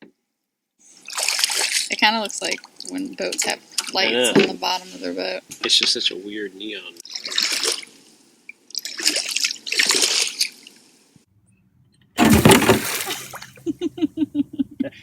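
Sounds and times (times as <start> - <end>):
water splashing: 0.9 - 4.8, 7.0 - 11.0, 12.2 - 13.7.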